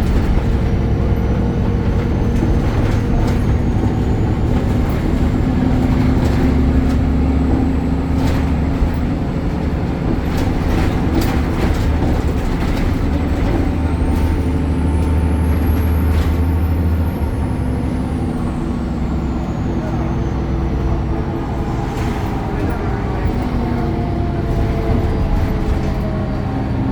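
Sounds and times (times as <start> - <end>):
rattles and knocks: 0.0 - 16.9
bus diesel engine running: 0.0 - 26.9.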